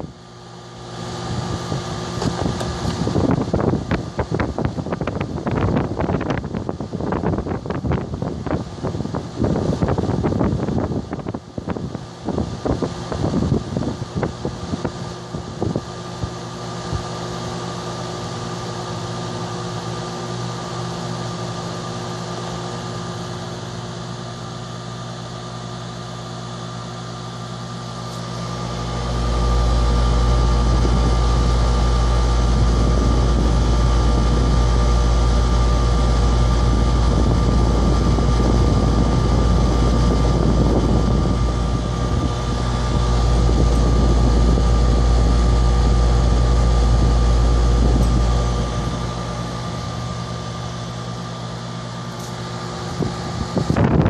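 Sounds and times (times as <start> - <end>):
air conditioner unit humming: 0.0 - 54.0
low rumbles: 28.1 - 54.0
deep low rumble: 28.5 - 54.0.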